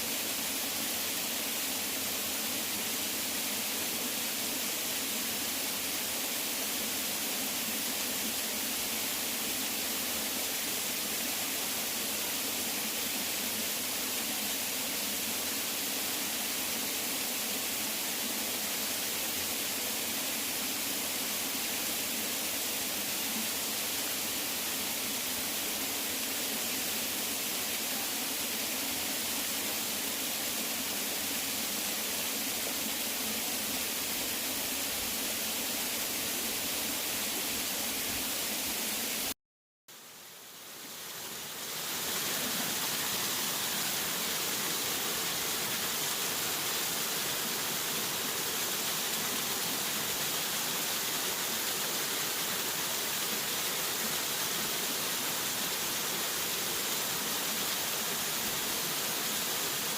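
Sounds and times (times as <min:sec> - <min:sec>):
waterfall rushing: 0:40.7 - 0:59.9.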